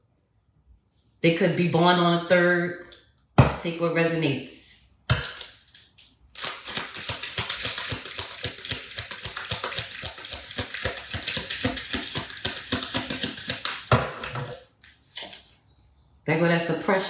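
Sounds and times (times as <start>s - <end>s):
cards being shuffled: 5.2s - 15.6s.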